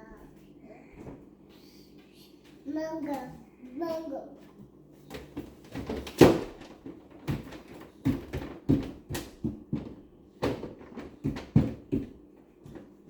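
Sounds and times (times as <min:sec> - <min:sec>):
refrigerator door knocks and thumps: 0:05.2 - 0:12.9.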